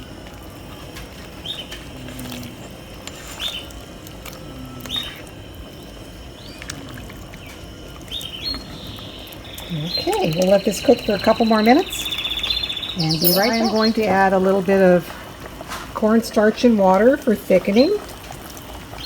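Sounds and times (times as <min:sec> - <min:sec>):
bird chirping high notes: 0:08.5 - 0:14.2.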